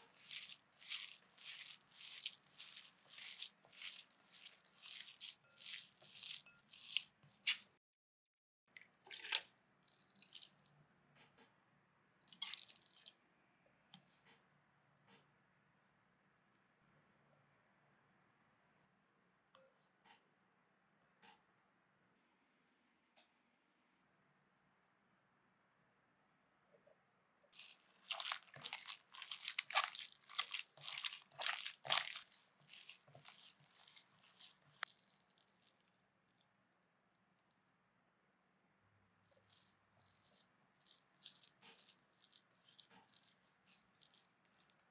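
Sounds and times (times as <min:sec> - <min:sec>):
wet squishing of food being mixed: 0:00.0 - 0:07.7, 0:09.1 - 0:10.7, 0:12.3 - 0:13.1, 0:27.6 - 0:36.6, 0:39.3 - 0:44.9.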